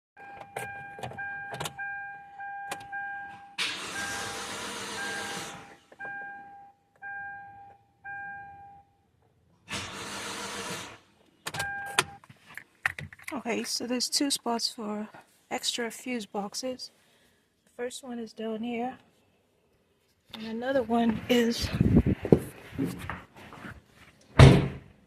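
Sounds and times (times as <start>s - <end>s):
dashboard warning chime: 0.2s - 4.4s, 5.0s - 9.0s, 11.6s - 12.2s.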